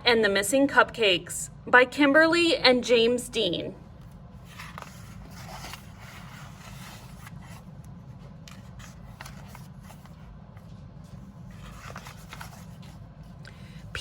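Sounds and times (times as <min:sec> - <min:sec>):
book pages turning: 0:04.0 - 0:13.4.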